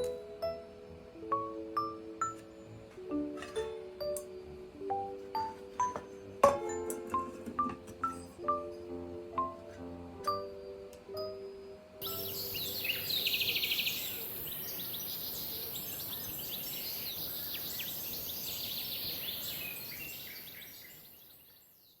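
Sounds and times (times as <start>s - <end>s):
birds chirping and trilling: 12.0s - 22.0s.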